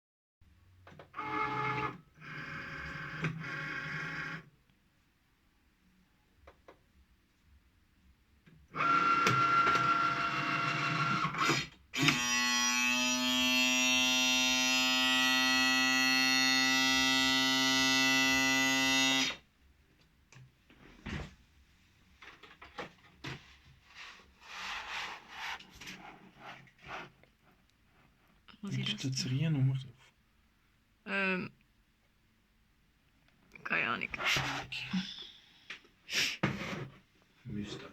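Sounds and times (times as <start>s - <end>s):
cutting machine buzzing: 8.8s - 19.4s.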